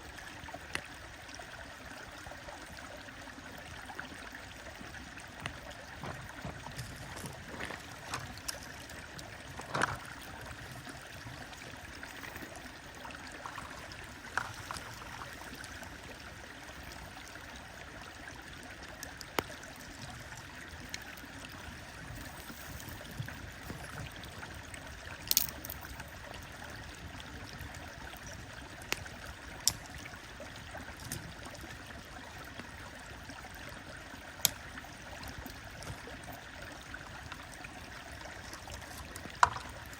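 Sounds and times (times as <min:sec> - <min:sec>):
stream rushing: 0:04.5 - 0:27.8.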